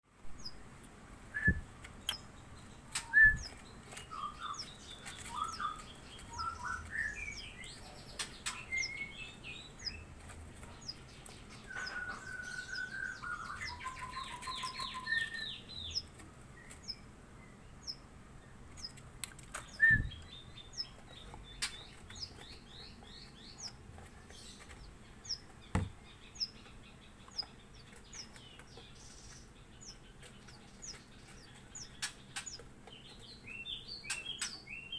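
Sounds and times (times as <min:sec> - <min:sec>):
young birds chirping: 0:00.4 - 0:34.9
sharp knocks: 0:25.7 - 0:26.0.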